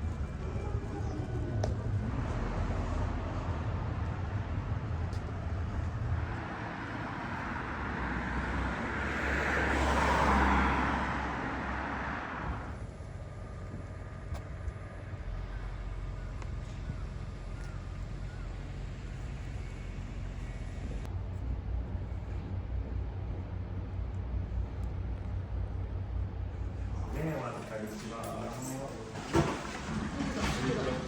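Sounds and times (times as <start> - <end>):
low traffic rumble: 0.0 - 31.0
car passing by: 1.8 - 13.0.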